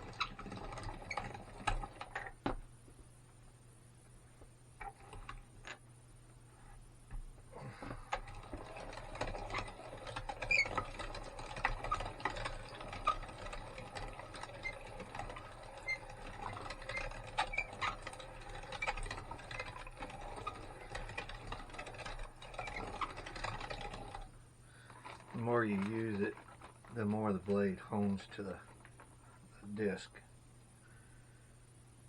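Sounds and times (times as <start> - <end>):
meat grinder crackling and squeaking: 0.0 - 2.4, 7.9 - 29.4.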